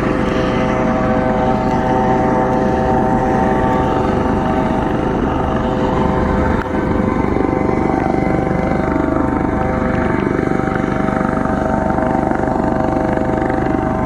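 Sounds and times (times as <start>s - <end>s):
helicopter engine whine: 0.0s - 14.0s
rotor blades chopping: 1.5s - 10.0s.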